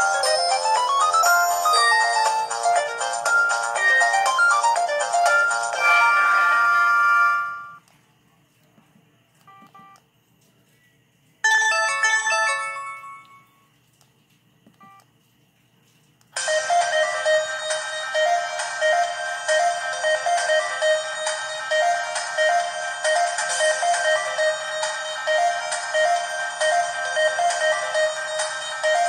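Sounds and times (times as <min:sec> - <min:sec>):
phone ringtone melodies: 0:00.0 - 0:07.8, 0:11.4 - 0:13.6, 0:16.4 - 0:29.0.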